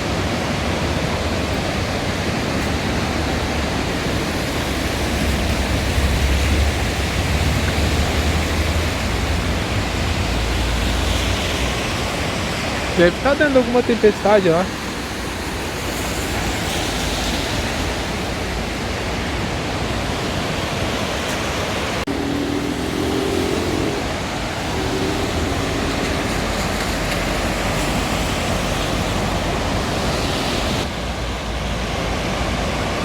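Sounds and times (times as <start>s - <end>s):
steady rushing outdoor noise: 0.0s - 33.0s.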